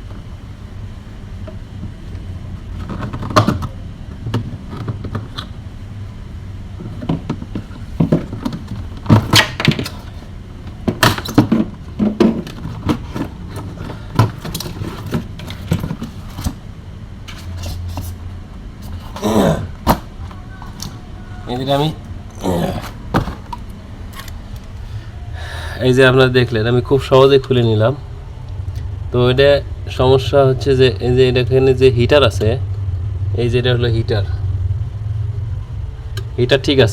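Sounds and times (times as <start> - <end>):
steady low hum: 0.0 - 36.9
plastic parts and tools rattling: 6.8 - 16.6.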